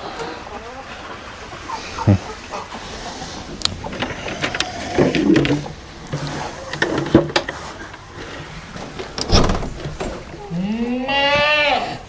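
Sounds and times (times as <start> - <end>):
hen clucking: 0.0 - 12.0
clicks and knocks of handling: 3.6 - 10.4.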